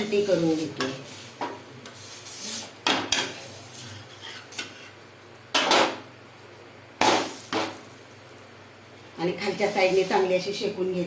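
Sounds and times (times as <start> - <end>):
metal utensil scraping on griddle: 0.0 - 5.0.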